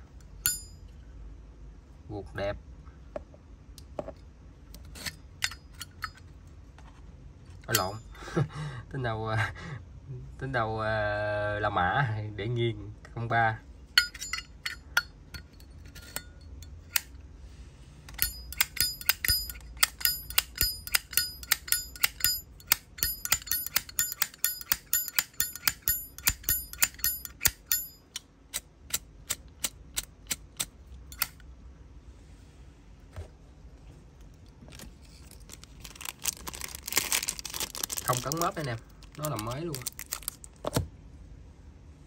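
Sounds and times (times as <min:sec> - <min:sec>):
lighter lid clinking open and shut: 0:18.2 - 0:28.0.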